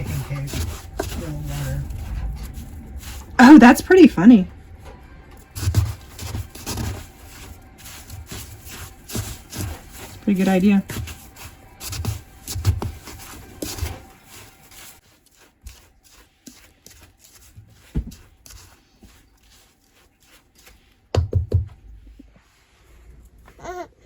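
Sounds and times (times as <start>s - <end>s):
knocks and thumps of handling: 17.9s - 18.3s, 21.1s - 21.8s.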